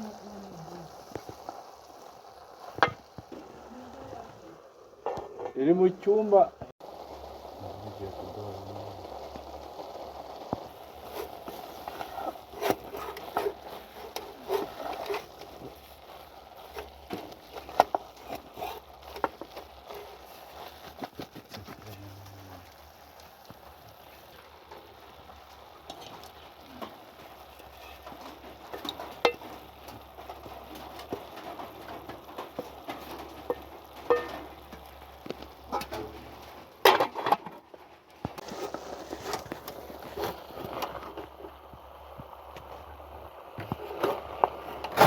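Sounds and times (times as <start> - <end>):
cooking clicks and crackles: 0.0 - 45.0
low steady hiss: 0.0 - 45.0.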